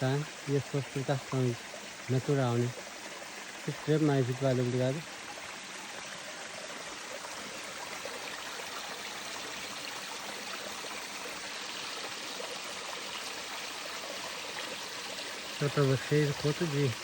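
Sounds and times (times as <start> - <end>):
stream water flowing: 0.0 - 17.0.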